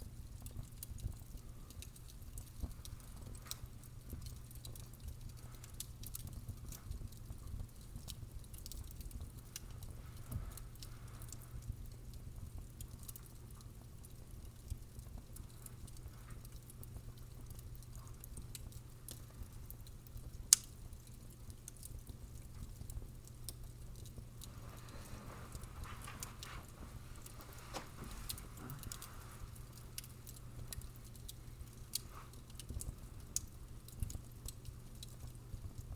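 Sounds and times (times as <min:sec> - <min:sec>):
fire crackling: 0:00.0 - 0:35.9
low fire rumble: 0:00.0 - 0:35.9
faint hiss: 0:24.4 - 0:33.4.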